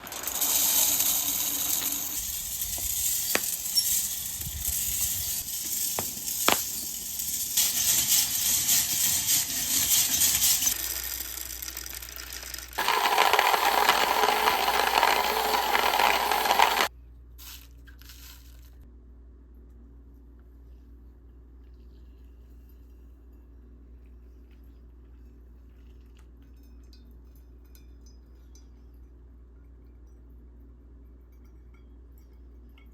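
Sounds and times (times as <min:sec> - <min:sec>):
beans popping: 0:00.0 - 0:08.7, 0:09.7 - 0:18.5
coffee beans roasting hiss: 0:00.0 - 0:18.6.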